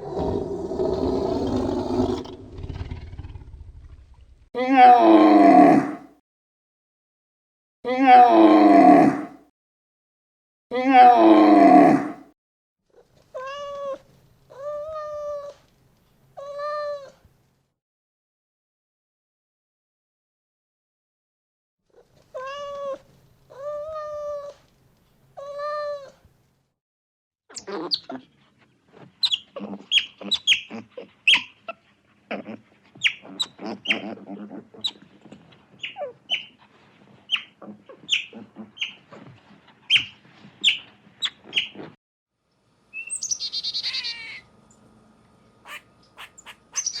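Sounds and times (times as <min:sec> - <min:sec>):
harsh animal calls falling in pitch: 0:00.0 - 0:04.0, 0:45.6 - 0:47.0
animal calling sharply: 0:43.0 - 0:44.4, 0:45.6 - 0:47.0
short quiet animal calls: 0:45.6 - 0:47.0.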